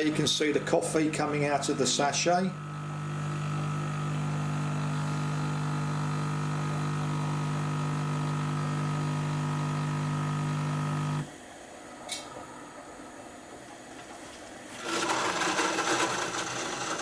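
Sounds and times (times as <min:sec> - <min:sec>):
coffee maker pump humming: 0:00.0 - 0:17.0.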